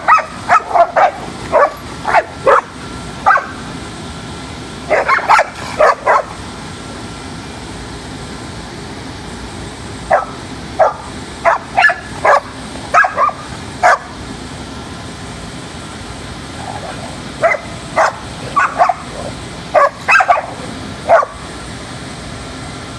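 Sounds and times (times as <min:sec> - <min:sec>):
dogs barking and yipping: 0:00.0 - 0:03.6, 0:04.9 - 0:06.4, 0:10.1 - 0:14.2, 0:16.6 - 0:21.5
background hum: 0:00.0 - 0:22.9.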